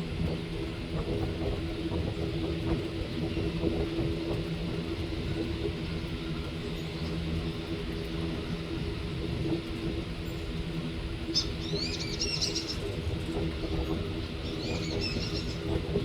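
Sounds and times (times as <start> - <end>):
low rumble with hum: 0.0 - 16.0
small bird chirping: 11.4 - 12.9, 14.4 - 15.6.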